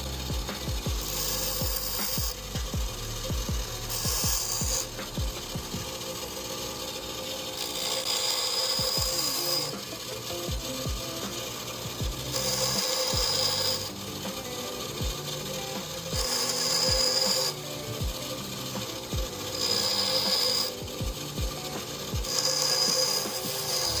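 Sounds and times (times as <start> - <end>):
grinder grinding metal: 0.0 - 24.0
motor humming: 0.0 - 24.0.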